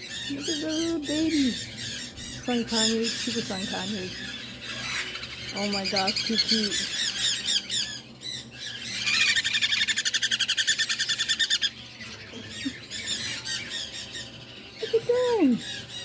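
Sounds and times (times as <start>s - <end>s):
parrots squawking: 0.0s - 16.0s.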